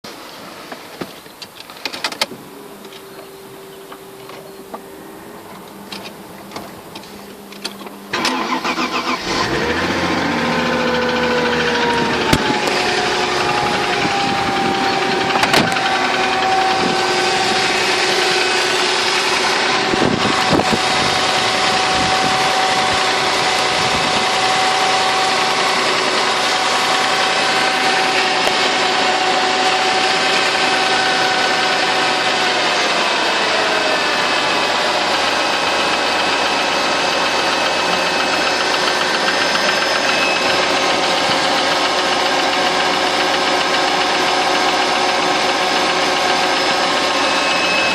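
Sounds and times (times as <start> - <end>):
car engine idling with knock: 10.0 - 33.1, 33.8 - 47.9.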